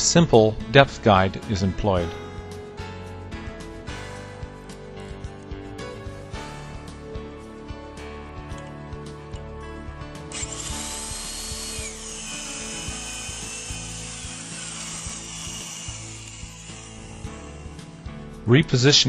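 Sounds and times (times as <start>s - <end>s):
background music: 0.0s - 19.0s
power drill whining: 10.3s - 18.2s.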